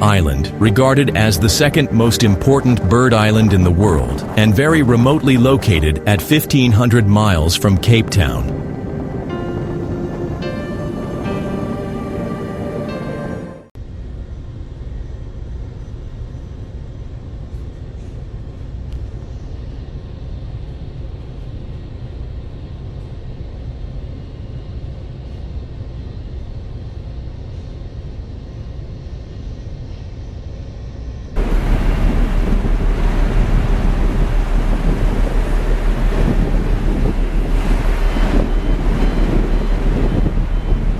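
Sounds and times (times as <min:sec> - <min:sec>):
wind buffeting microphone: 0:00.0 - 0:11.1, 0:31.4 - 0:40.9
low rumble: 0:00.0 - 0:12.2, 0:31.4 - 0:40.9
storm waves: 0:00.0 - 0:13.7, 0:31.4 - 0:40.9.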